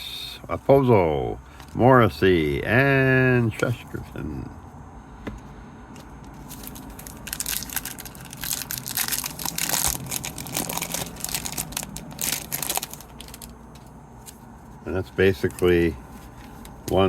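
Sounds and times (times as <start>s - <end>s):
foil wrapper crinkling and tearing: 6.4s - 14.4s, 15.2s - 17.0s.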